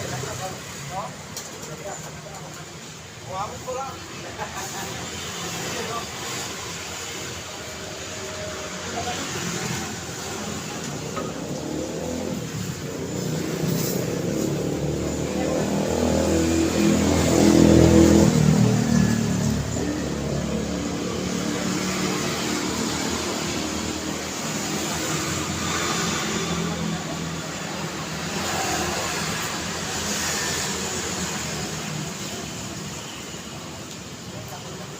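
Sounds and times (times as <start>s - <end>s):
traffic noise: 0.0s - 34.9s
vehicle engine passing close: 8.4s - 32.4s.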